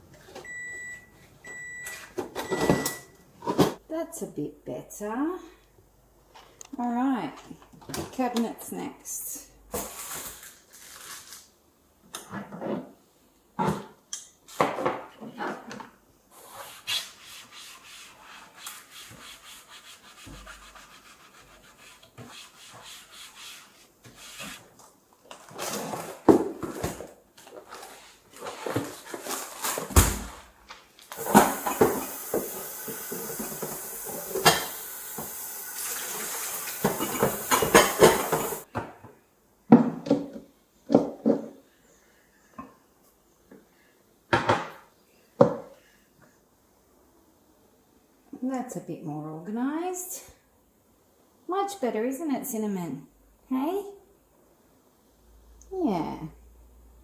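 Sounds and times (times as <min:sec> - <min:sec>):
household items knocking and clattering: 0:25.4 - 0:27.8, 0:31.2 - 0:39.1
steady hiss: 0:31.2 - 0:38.7.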